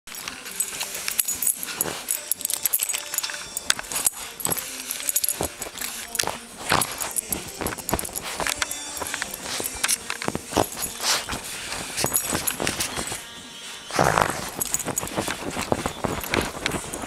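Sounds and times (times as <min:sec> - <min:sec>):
dog claws scratching fabric: 0:00.1 - 0:13.3, 0:13.9 - 0:17.0
dog snorting: 0:09.2 - 0:13.1, 0:13.9 - 0:17.0.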